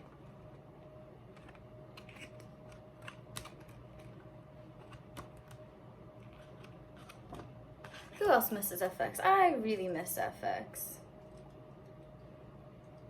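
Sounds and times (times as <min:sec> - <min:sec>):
photo book pages turning: 0:01.3 - 0:05.6, 0:06.2 - 0:08.2.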